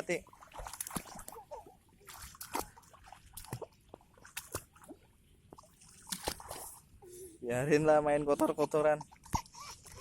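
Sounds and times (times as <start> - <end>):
children splashing in shallow water: 0.0 - 6.9.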